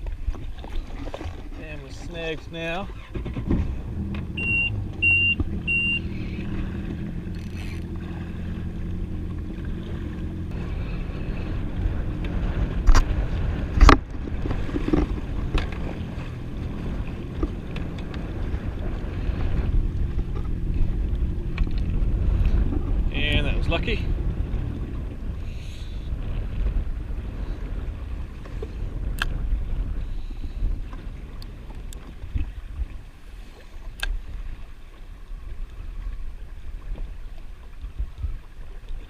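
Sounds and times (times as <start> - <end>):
jet ski engine idling: 1.7 - 35.0
short high beeps: 4.4 - 6.1.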